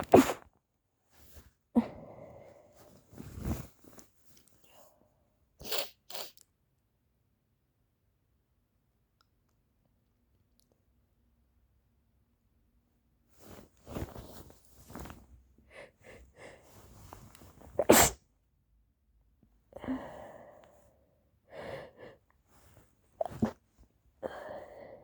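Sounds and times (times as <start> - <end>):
person sneezing: 0.0 - 0.4, 17.8 - 18.2.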